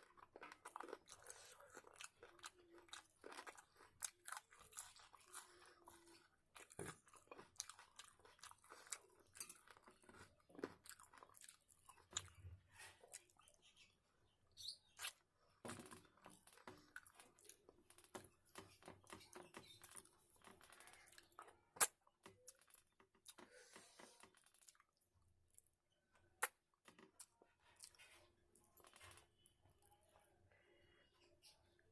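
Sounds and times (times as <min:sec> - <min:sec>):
person chewing and crunching: 0:00.0 - 0:13.6, 0:14.9 - 0:25.7.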